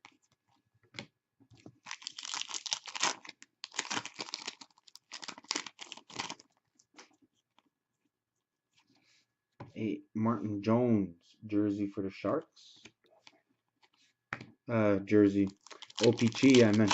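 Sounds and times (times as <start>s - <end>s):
foil wrappers crinkling and tearing: 1.8s - 6.5s, 15.4s - 16.9s.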